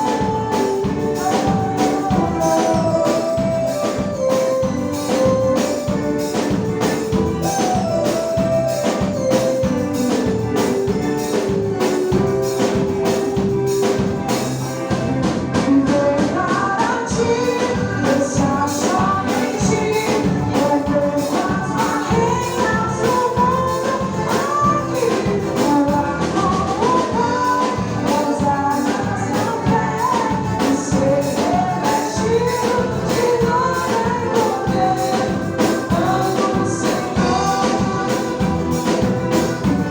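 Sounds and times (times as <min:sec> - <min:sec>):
person singing: 0:00.0 - 0:14.8, 0:15.5 - 0:39.9
drum beat: 0:00.0 - 0:15.3, 0:29.8 - 0:39.9
jingling percussion: 0:00.9 - 0:13.0.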